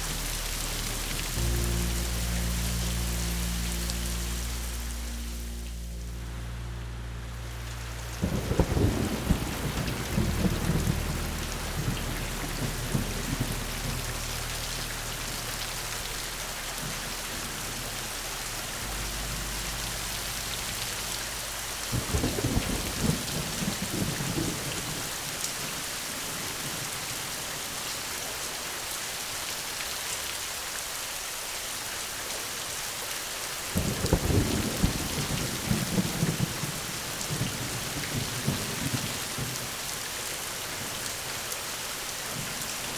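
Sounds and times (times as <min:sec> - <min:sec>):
thunder rumbling: 0:00.0 - 0:27.0, 0:33.8 - 0:40.1
steady rain pouring: 0:00.0 - 0:42.9.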